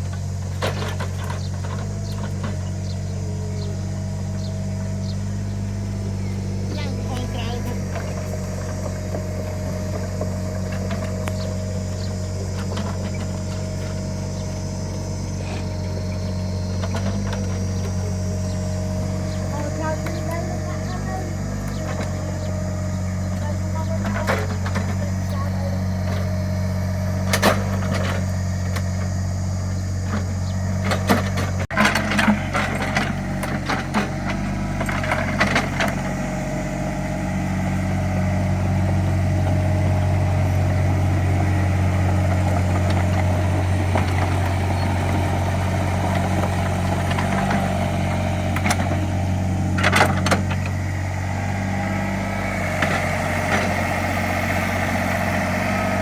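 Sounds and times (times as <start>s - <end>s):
digging knocks and clanks: 0.0s - 2.8s, 6.7s - 18.3s, 19.3s - 25.4s, 30.0s - 36.3s, 37.4s - 52.1s
excavator diesel engine running: 0.0s - 56.0s.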